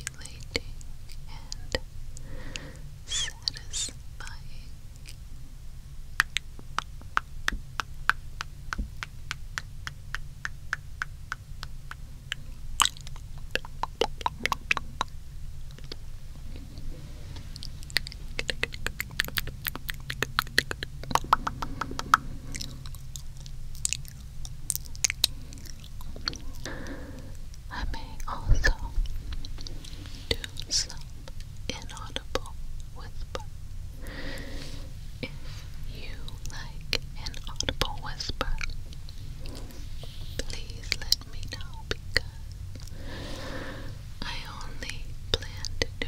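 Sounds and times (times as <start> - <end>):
tongue clicks: 0.0 - 5.2, 6.2 - 33.4, 36.1 - 43.0
wet mouth smacks: 6.2 - 27.6.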